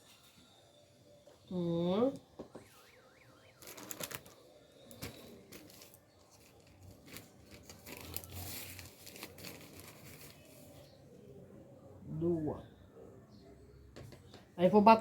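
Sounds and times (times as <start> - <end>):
flour packet rustling: 3.4 - 10.8.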